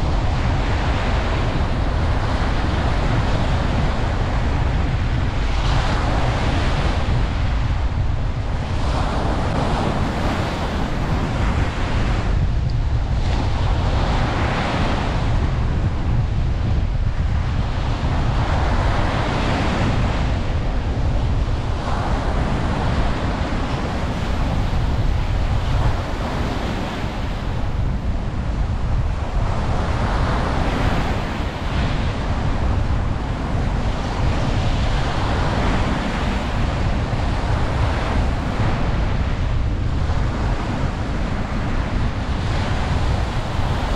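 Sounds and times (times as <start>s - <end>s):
wind on microphone: 0.0s - 43.9s
ocean waves breaking: 16.3s - 43.9s.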